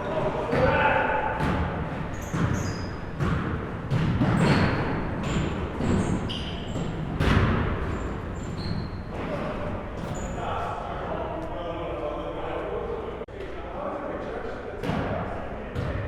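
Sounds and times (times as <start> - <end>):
basketball bouncing on gym floor: 0.5 - 9.4, 15.7 - 16.0
sneakers squeaking on court: 1.4 - 10.4.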